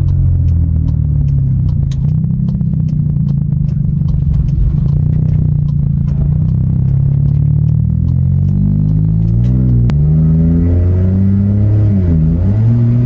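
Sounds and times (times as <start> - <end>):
light ticking clicks: 0.0 - 10.0
car engine and road drone: 0.0 - 13.0.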